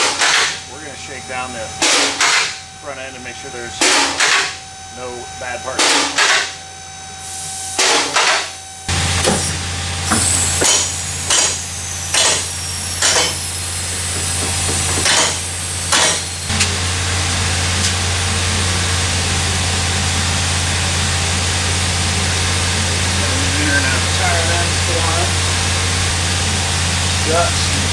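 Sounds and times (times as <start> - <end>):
hammer striking metal: 0.0 - 1.0, 1.8 - 2.7, 3.7 - 4.6, 5.8 - 6.6, 7.8 - 8.6, 9.2 - 16.9
steady machine hum: 0.0 - 27.9.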